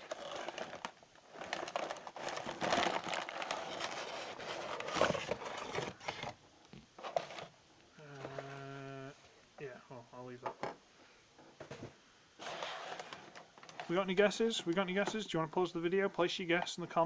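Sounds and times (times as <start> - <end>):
plastic packing crinkling: 0.0 - 6.4, 12.4 - 14.7.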